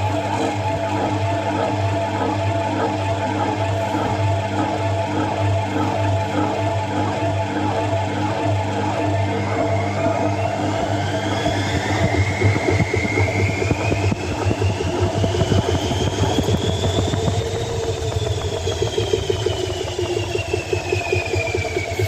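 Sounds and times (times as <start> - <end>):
low hum: 0.0 - 22.0
washing machine motor whine: 0.0 - 22.0.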